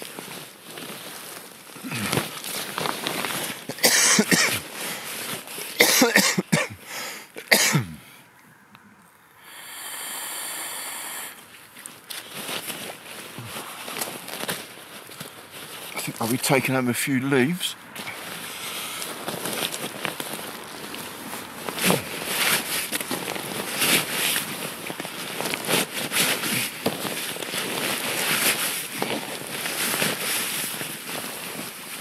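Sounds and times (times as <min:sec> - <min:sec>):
man coughing: 0:01.8 - 0:02.2, 0:03.7 - 0:04.7, 0:05.8 - 0:08.1.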